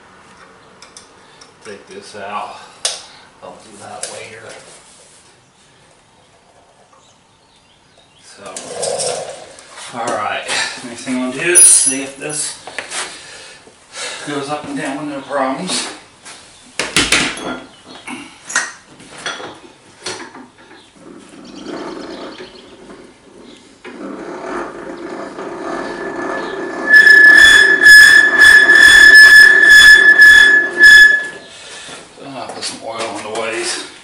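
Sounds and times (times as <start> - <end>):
high squeal with rhythmic scrape: 11.5 - 12.1, 24.5 - 31.6
milling machine hum: 26.7 - 31.3.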